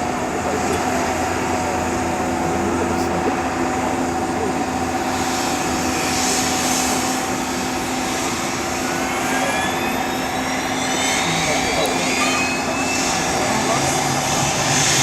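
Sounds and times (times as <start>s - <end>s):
jet airliner humming: 0.0s - 15.0s
jet engine whine rising: 0.0s - 15.0s.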